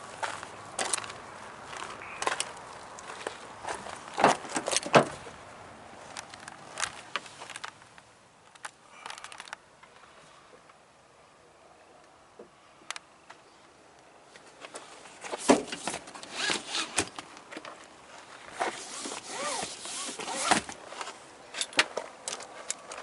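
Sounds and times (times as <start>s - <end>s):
rustling: 14.3s - 21.3s.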